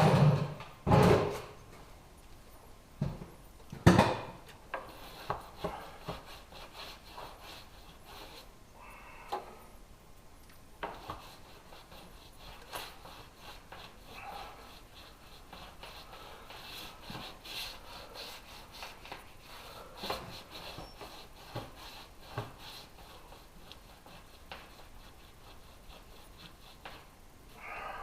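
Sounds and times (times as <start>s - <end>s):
scraping and rubbing: 4.8s - 8.5s, 10.8s - 27.1s.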